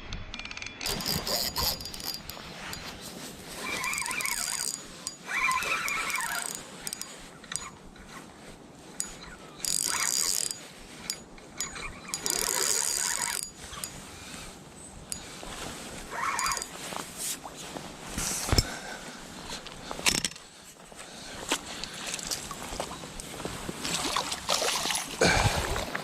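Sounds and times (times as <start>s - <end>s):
fishing reel whirring and clicking: 0.4s - 2.9s, 3.6s - 7.8s, 9.0s - 14.0s, 16.1s - 16.7s.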